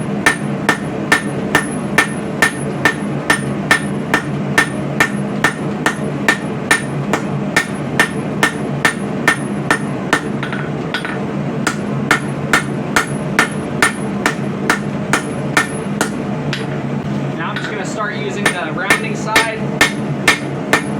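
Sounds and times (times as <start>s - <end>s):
hammer striking steel on anvil: 0.0s - 16.8s, 18.4s - 20.9s.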